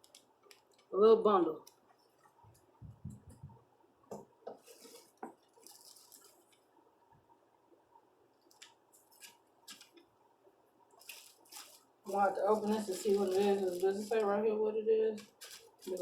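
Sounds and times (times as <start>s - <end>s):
rustling and crinkling of wrapping: 0.0s - 0.9s, 4.5s - 6.7s, 8.4s - 10.0s, 10.9s - 14.5s, 15.1s - 16.0s.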